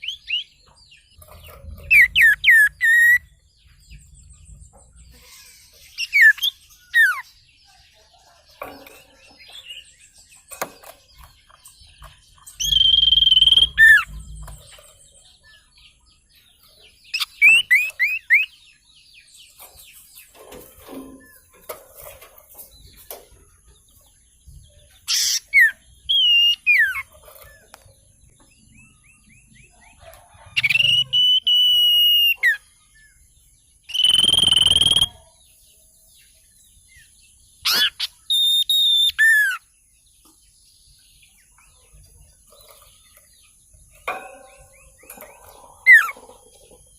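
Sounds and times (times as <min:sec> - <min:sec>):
songbird whistling: 0:12.6 - 0:14.1, 0:17.1 - 0:18.5, 0:25.1 - 0:27.1, 0:30.6 - 0:32.6, 0:33.9 - 0:35.2, 0:37.6 - 0:39.7.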